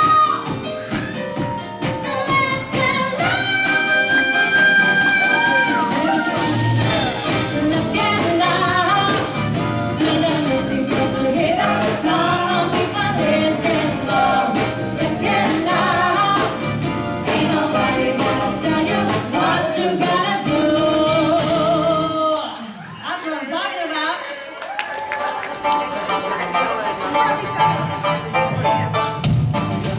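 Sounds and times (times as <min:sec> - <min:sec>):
steady drum beat: 0:00.0 - 0:22.1
live band playing: 0:00.0 - 0:22.6, 0:25.1 - 0:29.9.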